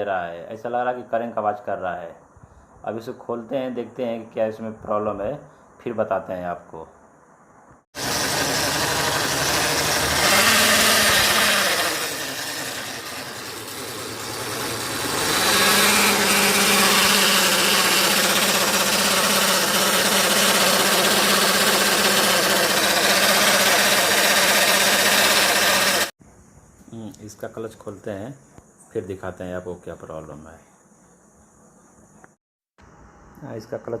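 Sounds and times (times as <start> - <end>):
scooter engine running: 8.0 - 26.2.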